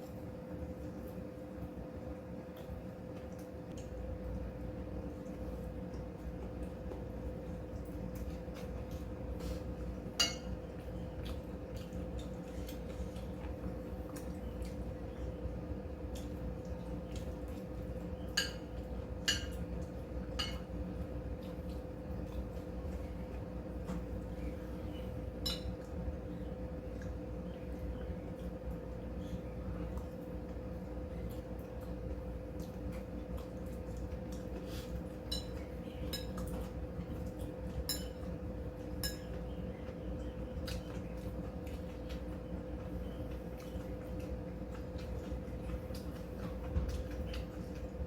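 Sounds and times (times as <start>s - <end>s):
faint steady hum: 0.0s - 48.0s
utensils clinking against dishes: 10.2s - 10.6s, 18.3s - 19.6s, 20.3s - 20.7s, 25.4s - 25.8s, 35.2s - 36.7s, 37.8s - 38.3s, 39.0s - 39.4s.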